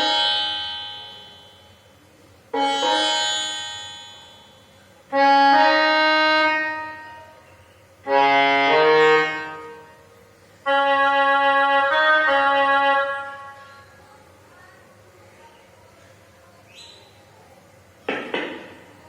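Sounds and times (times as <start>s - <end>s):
keyboard playing held chords: 0.0s - 14.0s.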